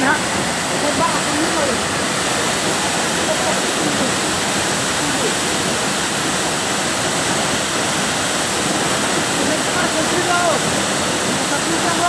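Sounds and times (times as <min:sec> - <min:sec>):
waterfall pouring: 0:00.0 - 0:12.0.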